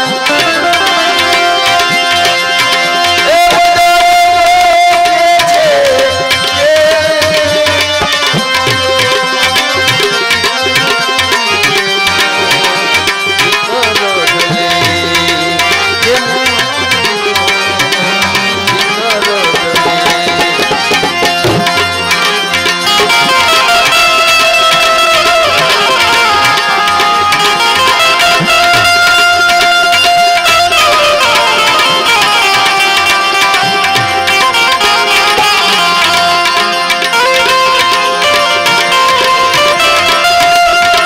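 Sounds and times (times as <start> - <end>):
held wavering melody: 0.0 - 41.0
tabla playing: 0.0 - 41.0.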